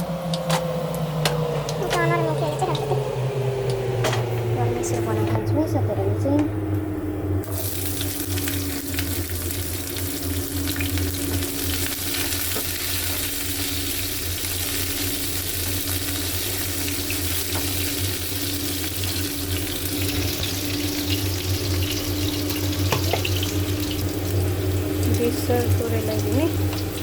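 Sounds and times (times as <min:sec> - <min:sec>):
steady low hum: 0:00.0 - 0:27.0
onions sizzling in oil: 0:07.4 - 0:27.0.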